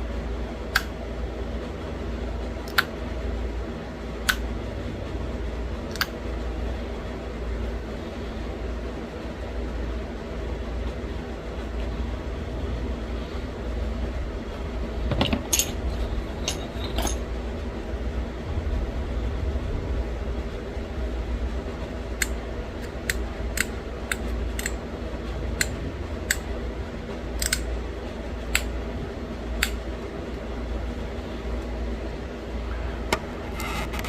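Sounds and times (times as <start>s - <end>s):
steady low hum: 0.0s - 34.0s.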